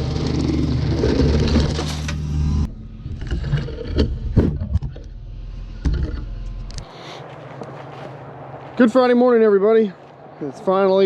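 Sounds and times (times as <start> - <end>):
heavy machine engine hum: 0.0 - 8.8.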